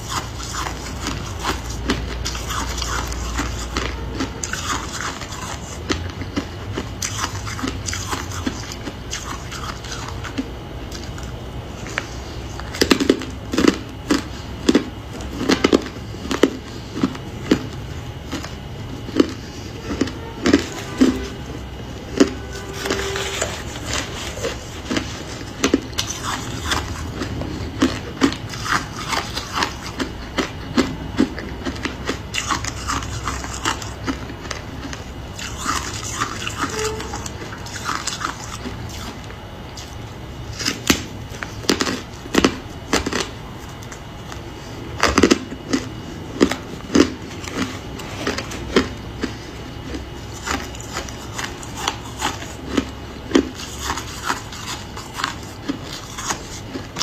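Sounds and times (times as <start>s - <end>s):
person crunching ice: 22.0s - 36.8s, 45.0s - 57.0s.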